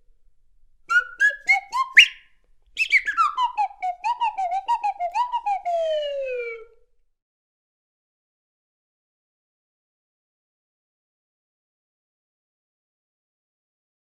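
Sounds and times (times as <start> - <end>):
slide whistle: 0.9 - 2.2, 2.8 - 6.8.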